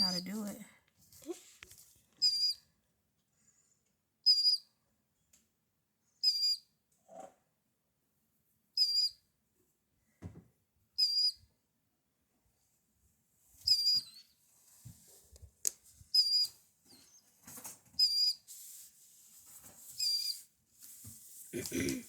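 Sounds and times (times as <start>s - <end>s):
soft rustling: 0.0s - 2.2s, 14.4s - 16.1s, 16.9s - 21.7s.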